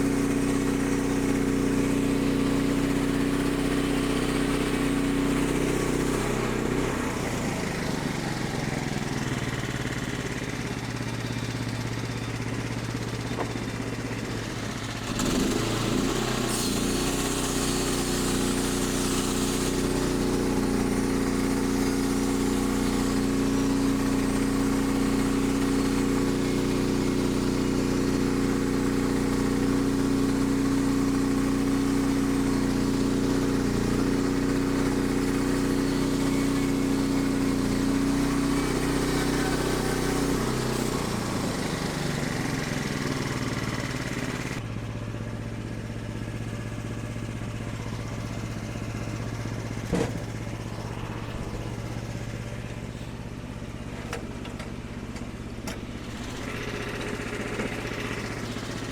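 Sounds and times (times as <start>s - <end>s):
sawmill engine running: 0.0s - 58.9s.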